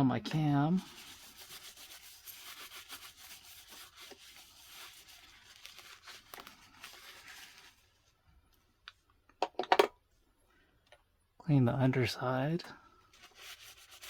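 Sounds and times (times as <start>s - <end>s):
paper towel rubbing metal: 0.4s - 7.8s, 13.1s - 14.0s.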